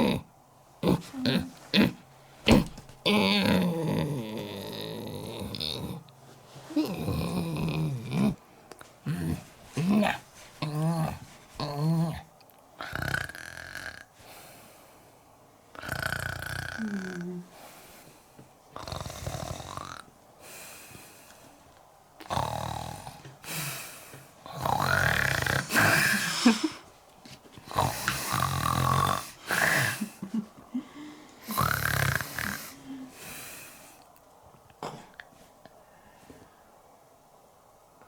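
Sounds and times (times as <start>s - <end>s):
comic snoring: 0.0s - 6.0s, 6.8s - 8.4s, 12.8s - 14.2s, 15.8s - 17.5s, 18.8s - 20.1s, 22.2s - 23.7s, 24.5s - 26.8s, 27.7s - 30.2s, 31.4s - 33.4s.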